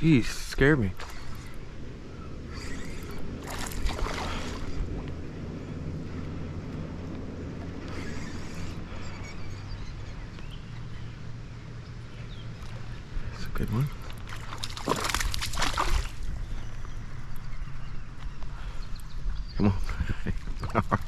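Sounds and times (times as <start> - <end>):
steady low hum: 0.0 - 21.0
water splashing: 2.8 - 5.0, 14.1 - 16.3.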